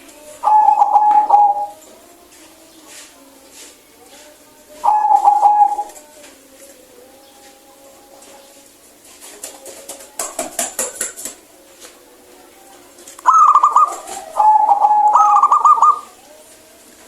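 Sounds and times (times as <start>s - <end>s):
dove trilled cooing: 0.0s - 1.9s, 4.8s - 6.1s, 13.2s - 16.3s.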